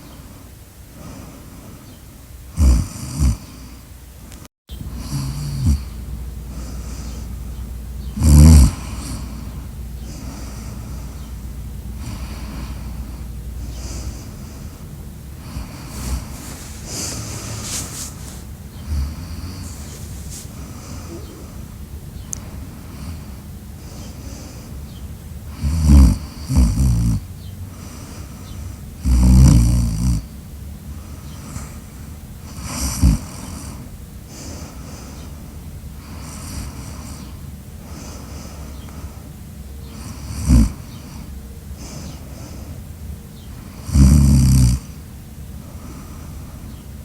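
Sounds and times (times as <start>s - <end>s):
quiet breathing: 0.0s - 47.0s
person snoring loudly: 2.6s - 3.6s, 4.8s - 7.3s, 8.2s - 11.3s, 12.0s - 14.8s, 15.4s - 21.6s, 25.5s - 27.2s, 29.0s - 30.2s, 32.6s - 33.7s, 40.0s - 40.8s, 43.8s - 44.9s.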